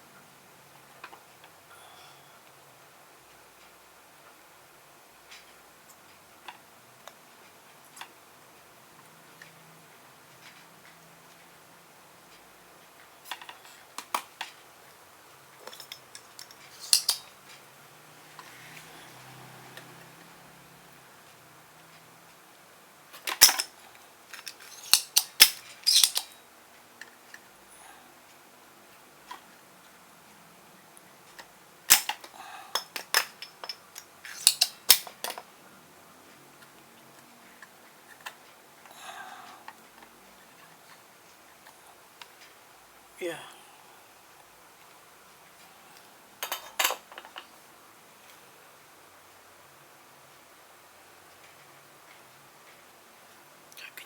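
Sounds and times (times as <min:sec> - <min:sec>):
hand tools clicking and tapping: 0:15.6 - 0:17.6, 0:23.1 - 0:26.4, 0:31.3 - 0:35.5, 0:46.4 - 0:47.5
hand tools clicking on circuit board: 0:31.3 - 0:35.4.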